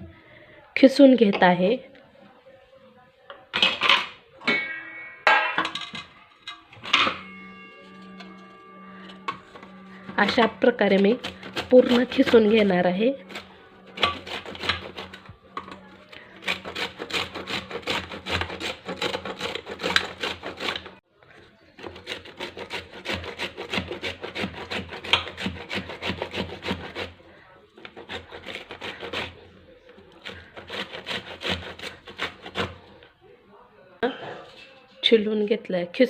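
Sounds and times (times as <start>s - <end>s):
mango grated on a grater: 7.1s - 33.0s.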